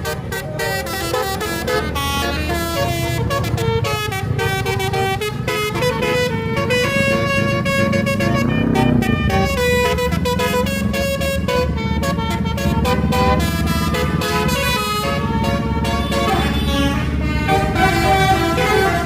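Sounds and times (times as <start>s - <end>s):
bus engine rumble: 0.0s - 19.0s
bus horn playing a melody: 0.0s - 19.0s.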